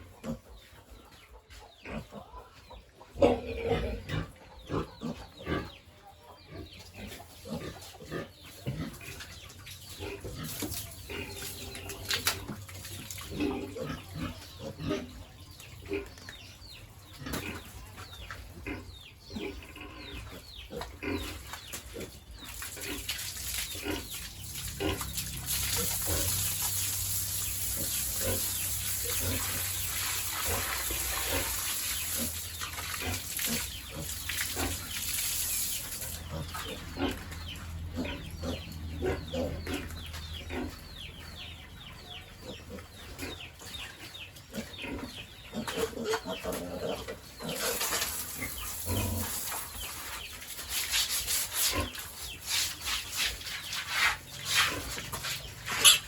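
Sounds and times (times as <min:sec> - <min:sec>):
pigs grunting and squealing: 0:01.8 - 0:02.5, 0:03.1 - 0:16.2, 0:18.5 - 0:35.2, 0:35.9 - 0:41.0, 0:42.4 - 0:49.8, 0:53.4 - 0:56.0.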